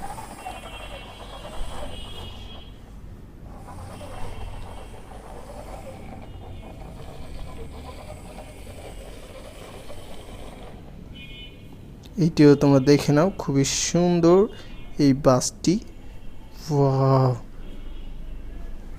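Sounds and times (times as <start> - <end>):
toy wheels whirring: 0.0 - 11.2.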